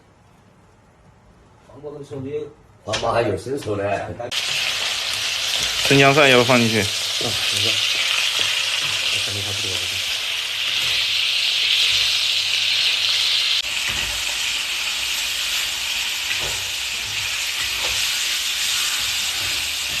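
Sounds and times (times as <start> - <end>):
food sizzling in a pan: 4.3 - 20.0.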